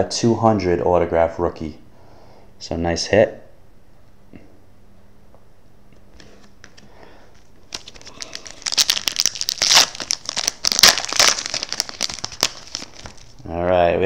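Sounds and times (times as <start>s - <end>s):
wrapper tearing and crinkling: 7.7s - 13.4s.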